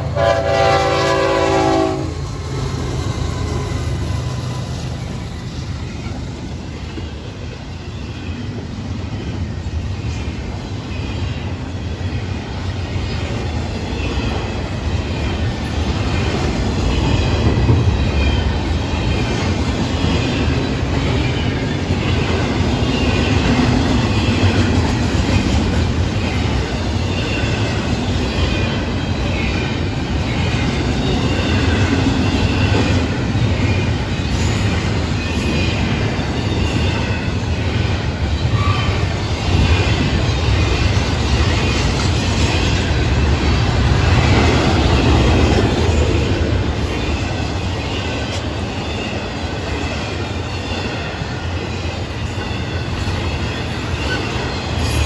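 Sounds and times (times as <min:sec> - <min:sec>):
train wheels rumbling on rail: 0:00.0 - 0:55.0
high wheel squeal: 0:46.9 - 0:55.0.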